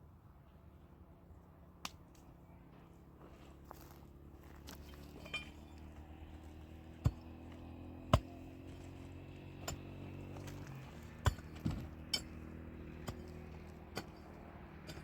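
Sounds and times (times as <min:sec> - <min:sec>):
sharp clinks: 0:04.8 - 0:05.9.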